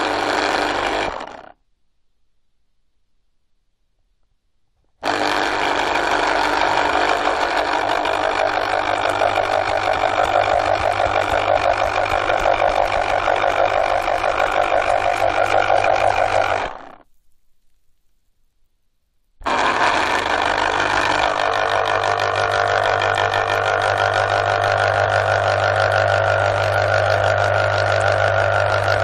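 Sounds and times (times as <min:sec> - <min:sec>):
juice extractor motor humming: 0:00.0 - 0:01.6, 0:05.0 - 0:17.0, 0:19.4 - 0:29.0.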